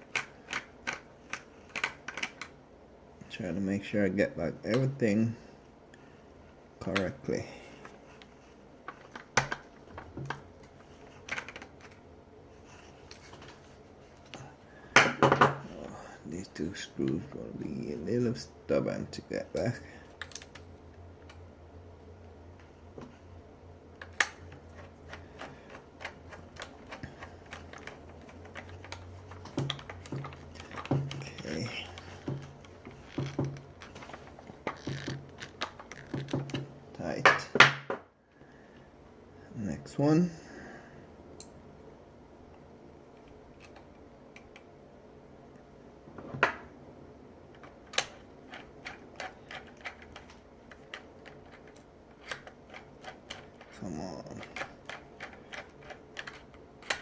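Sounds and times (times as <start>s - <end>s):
faint low hum: 0.0s - 57.0s.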